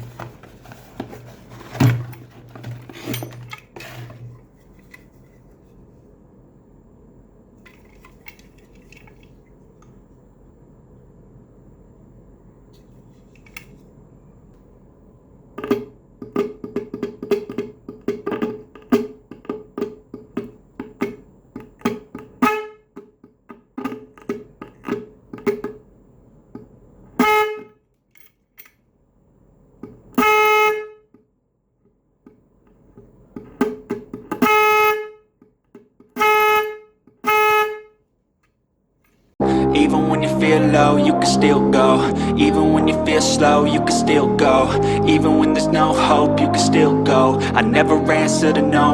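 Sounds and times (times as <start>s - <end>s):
electric car horn: 20.8s - 23.1s, 23.8s - 25.7s, 27.1s - 27.8s, 30.2s - 31.1s, 34.3s - 35.3s, 36.1s - 38.0s.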